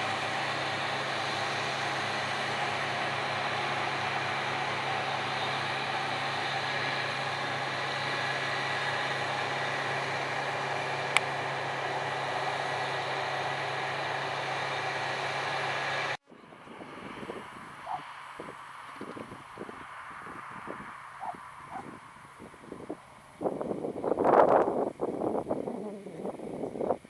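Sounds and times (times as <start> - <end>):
diesel machinery running: 0.0 - 27.0
wind-like hiss: 16.0 - 27.0.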